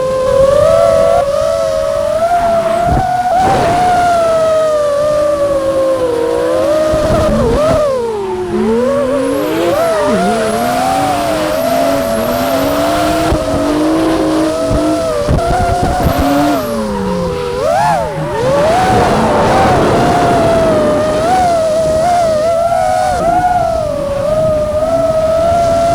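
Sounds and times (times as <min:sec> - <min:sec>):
engine revving: 0:00.0 - 0:25.9
tyres squealing: 0:05.2 - 0:24.2.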